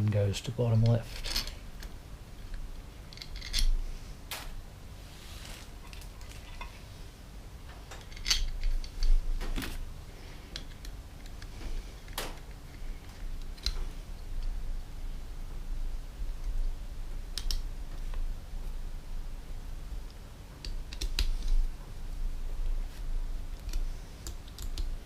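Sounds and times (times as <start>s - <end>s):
metal parts and tools clinking: 0.8s - 3.8s, 7.9s - 9.8s.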